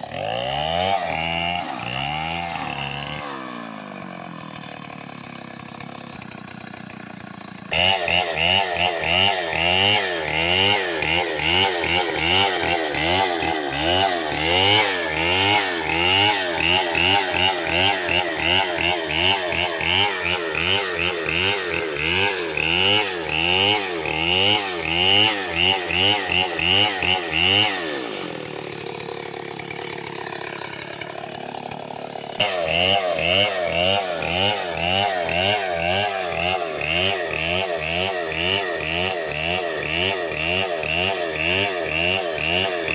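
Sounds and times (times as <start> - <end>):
chainsaw cutting wood: 0.0 - 42.9.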